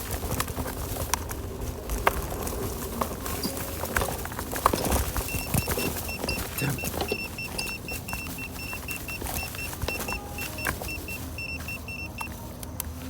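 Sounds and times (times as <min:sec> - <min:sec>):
rapid high-pitched electronic beeping: 0:05.3 - 0:12.3.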